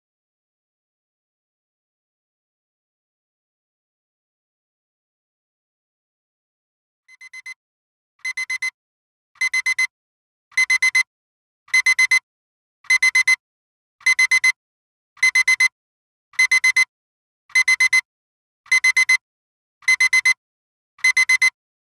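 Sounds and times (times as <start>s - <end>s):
timer alarm beeping: 7.1s - 7.6s, 8.2s - 8.8s, 9.4s - 9.9s, 10.6s - 11.1s, 11.7s - 12.2s, 12.9s - 13.4s, 14.0s - 14.6s, 15.2s - 15.7s, 16.4s - 16.9s, 17.6s - 18.1s, 18.7s - 19.2s, 19.8s - 20.4s, 21.0s - 21.6s.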